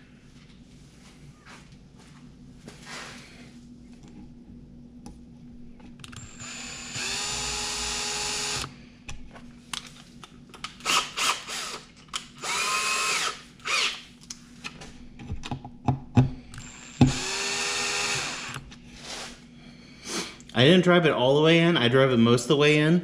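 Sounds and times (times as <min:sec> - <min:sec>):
drill motor whine: 0:06.1 - 0:08.7, 0:10.8 - 0:11.8, 0:12.4 - 0:14.0, 0:16.6 - 0:18.6.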